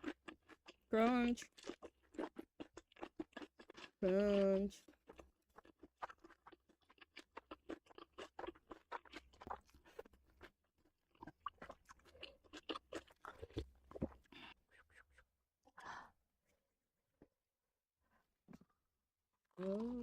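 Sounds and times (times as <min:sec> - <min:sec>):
person chewing crisp food: 0:00.0 - 0:15.3.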